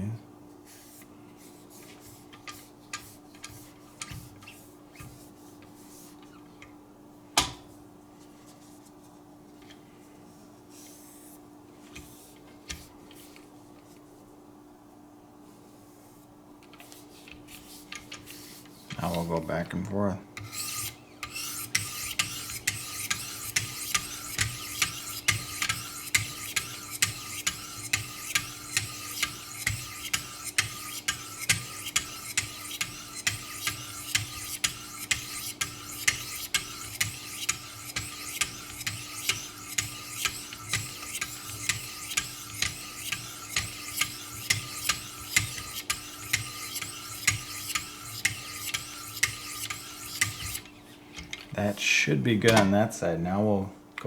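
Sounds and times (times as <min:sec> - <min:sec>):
sharpening stones rasping on knife: 0:20.4 - 0:50.7.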